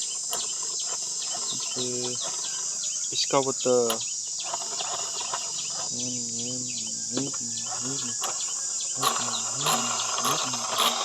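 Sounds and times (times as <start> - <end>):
high-pitched insect chorus: 0.0 - 11.0
murmured voices: 5.8 - 8.3.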